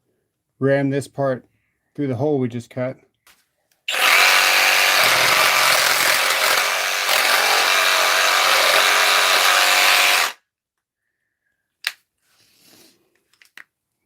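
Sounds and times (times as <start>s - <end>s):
power tool running: 3.9s - 10.4s.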